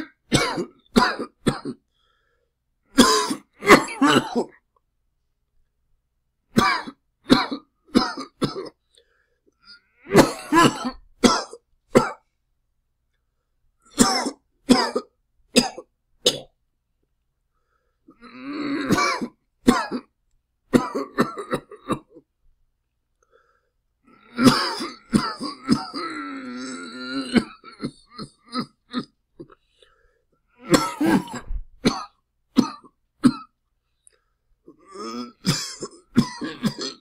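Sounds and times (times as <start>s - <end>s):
person coughing harshly: 0.0s - 1.8s, 3.0s - 4.6s, 6.5s - 8.8s, 10.0s - 12.2s, 14.0s - 16.5s, 18.6s - 20.1s, 20.7s - 22.2s, 24.3s - 29.6s, 30.6s - 33.6s, 34.8s - 37.0s
hacking throat-clear: 3.0s - 4.6s, 10.0s - 12.2s, 18.1s - 20.1s, 24.3s - 29.6s, 30.6s - 33.5s, 34.7s - 37.0s.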